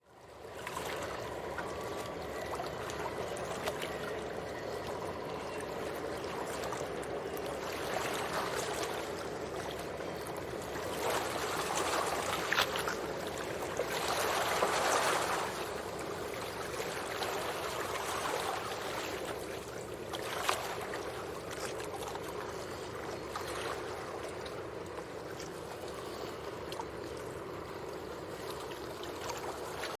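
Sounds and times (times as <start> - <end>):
stream water flowing: 0.0 - 30.0
water splashes: 0.0 - 30.0.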